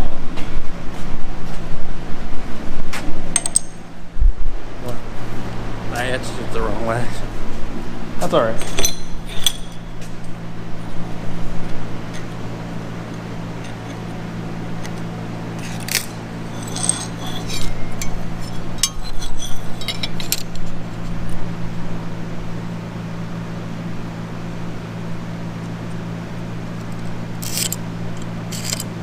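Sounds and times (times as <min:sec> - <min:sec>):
shop machinery hum: 0:00.0 - 0:29.0
metal tools clinking: 0:03.3 - 0:04.0, 0:08.3 - 0:10.4, 0:15.6 - 0:20.8, 0:27.4 - 0:29.0.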